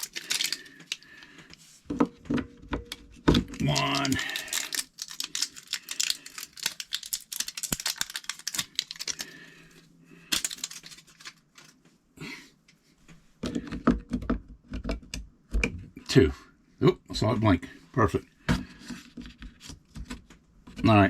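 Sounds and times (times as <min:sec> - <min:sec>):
batteries clicking and rattling: 0:00.0 - 0:01.5, 0:02.9 - 0:09.4, 0:10.3 - 0:11.4.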